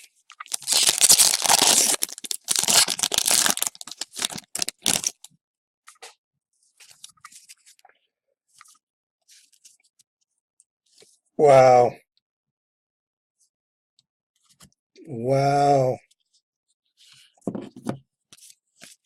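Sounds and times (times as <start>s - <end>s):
wrapper being torn open: 0.3s - 5.3s
wrapper crinkling: 0.3s - 5.3s.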